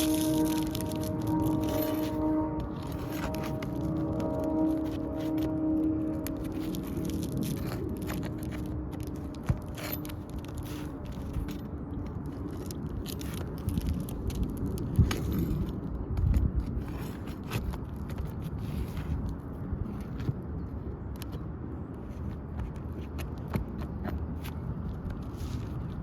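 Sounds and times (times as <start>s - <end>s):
roof shingles scraping: 0.0s - 15.7s.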